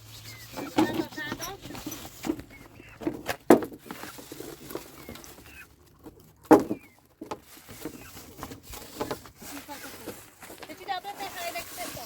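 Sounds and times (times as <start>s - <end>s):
faint bird chirps: 0.0s - 3.1s.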